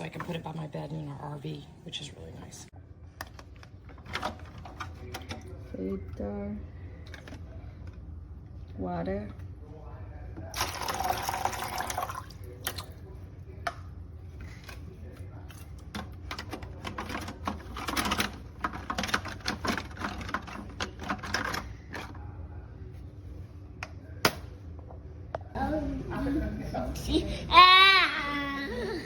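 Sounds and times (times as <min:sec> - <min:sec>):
water pouring into tank: 0:10.5 - 0:12.9
plastic parts clicking and knocking: 0:15.9 - 0:22.1.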